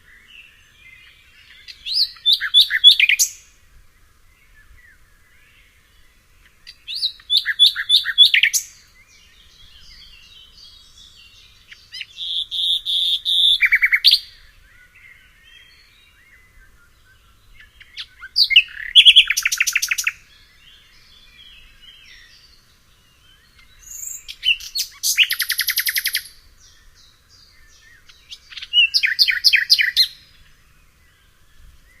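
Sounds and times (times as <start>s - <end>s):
other birds chirping: 0.0s - 32.0s
songbird singing trills: 0.0s - 32.0s.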